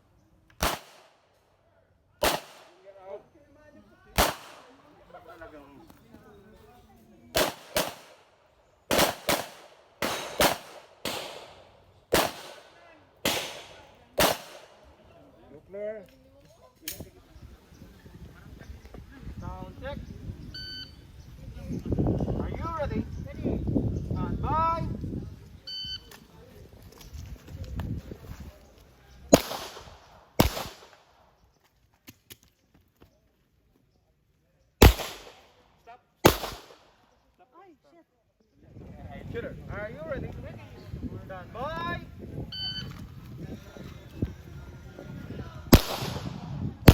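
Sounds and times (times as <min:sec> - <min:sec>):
pistol shots with echo: 0:00.6 - 0:01.2, 0:02.2 - 0:02.8, 0:04.2 - 0:04.8, 0:07.3 - 0:14.9, 0:29.3 - 0:31.2, 0:34.8 - 0:35.6, 0:36.2 - 0:37.0, 0:45.7 - 0:46.9.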